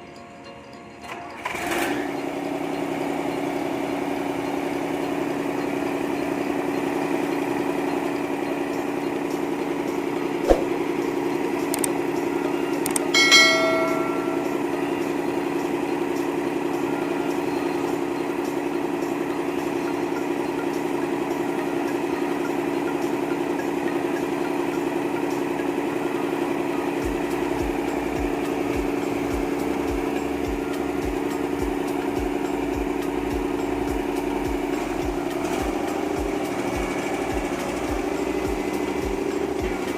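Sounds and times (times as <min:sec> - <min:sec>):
diesel engine running: 0:01.3 - 0:39.9
metallic ringing clink: 0:13.0 - 0:15.2.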